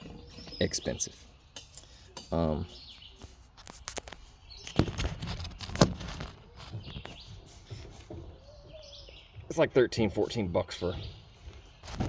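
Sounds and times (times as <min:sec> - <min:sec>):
faint bird chirps: 0:06.4 - 0:09.5.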